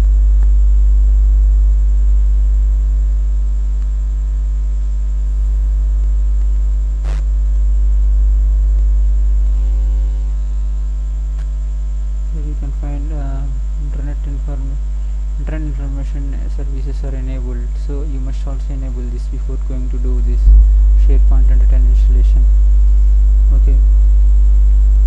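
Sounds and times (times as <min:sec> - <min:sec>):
electrical mains hum: 0:00.0 - 0:25.0.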